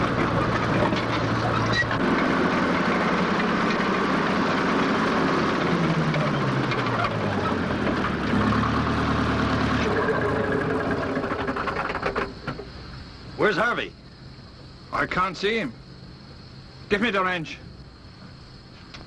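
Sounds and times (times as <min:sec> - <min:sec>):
bulldozer diesel engine running: 0:00.0 - 0:13.4.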